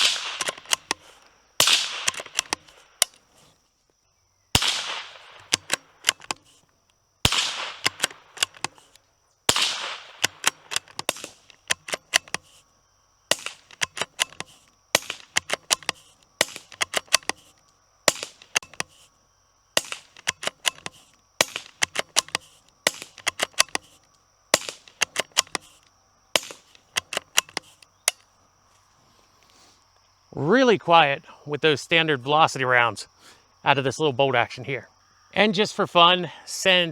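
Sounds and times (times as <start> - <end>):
rifle bolt clicks: 0.0 - 3.3, 4.6 - 6.7, 7.3 - 12.6, 13.3 - 19.1, 19.8 - 28.3
suppressed rifle shots: 0.0 - 3.4, 4.6 - 6.6, 7.2 - 12.6, 13.3 - 19.0, 19.8 - 28.3.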